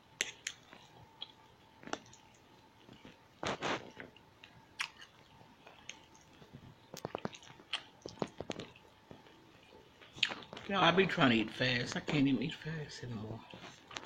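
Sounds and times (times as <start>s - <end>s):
person chewing food: 0.1s - 10.7s, 13.5s - 14.0s
lip smacks: 6.9s - 9.3s.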